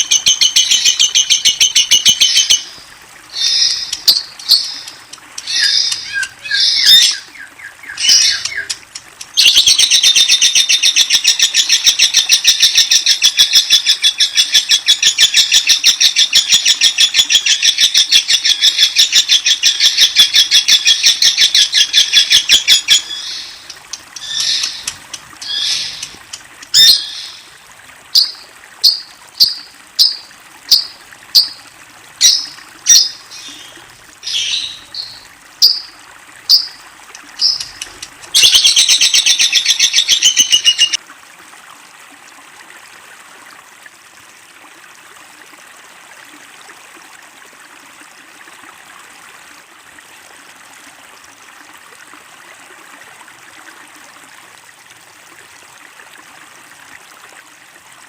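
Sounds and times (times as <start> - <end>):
bird chirps: 5.5 - 8.8, 37.4 - 41.0
lovebird chattering trill: 37.4 - 41.0.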